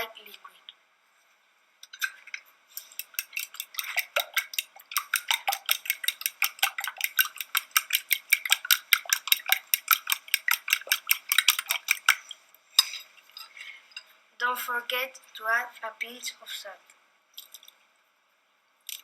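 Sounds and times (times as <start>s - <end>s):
utensil beating eggs in bowl: 2.8s - 13.5s.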